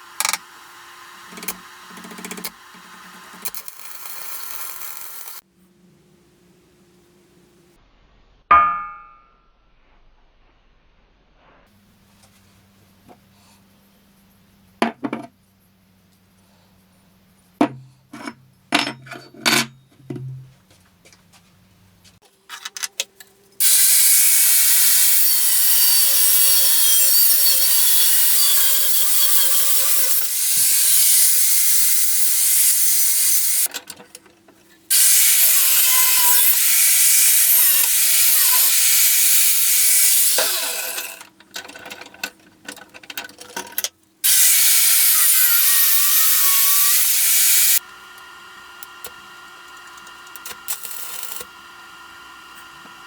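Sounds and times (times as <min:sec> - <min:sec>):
belt grinder grinding: 0:00.0 - 0:05.4, 0:23.6 - 0:33.7, 0:34.9 - 0:41.3, 0:44.2 - 0:47.8, 0:48.8 - 0:53.0.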